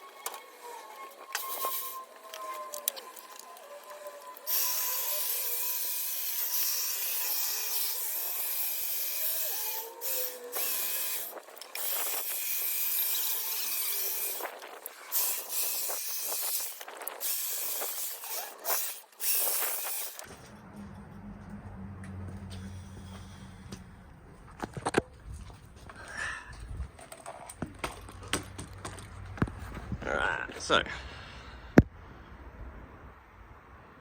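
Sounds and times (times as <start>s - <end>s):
hedge trimmer motor whining: 0.0s - 20.5s
low hum: 20.2s - 27.1s.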